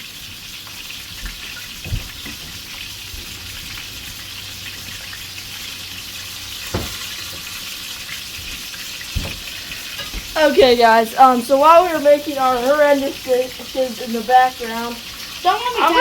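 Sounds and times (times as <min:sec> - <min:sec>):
food sizzling in a pan: 0:00.0 - 0:16.0
soft knocks: 0:06.7 - 0:07.5, 0:09.1 - 0:10.4.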